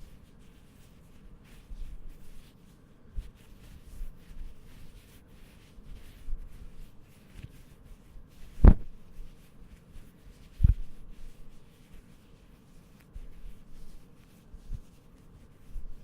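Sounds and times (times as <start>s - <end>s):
cloth rubbing: 0.0s - 16.0s
dull thumps: 8.6s - 8.9s.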